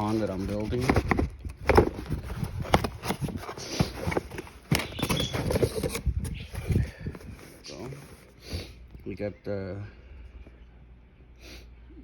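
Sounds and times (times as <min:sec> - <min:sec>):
rustling: 0:00.0 - 0:08.4
box being handled and opened: 0:00.0 - 0:08.8.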